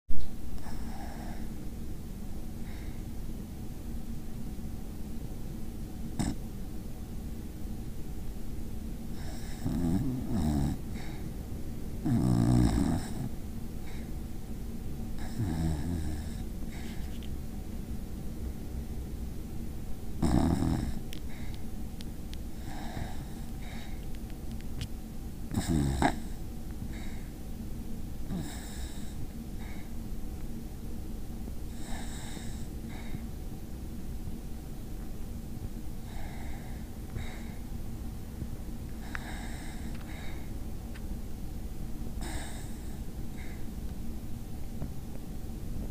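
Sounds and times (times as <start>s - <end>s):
dog snoring: 0.6s - 1.5s, 6.2s - 6.4s, 9.1s - 11.3s, 12.0s - 14.1s, 15.2s - 17.1s, 20.2s - 21.6s, 22.5s - 24.0s, 25.5s - 27.3s, 28.3s - 29.9s, 31.7s - 33.2s, 36.0s - 37.6s, 39.0s - 40.5s, 42.2s - 43.6s.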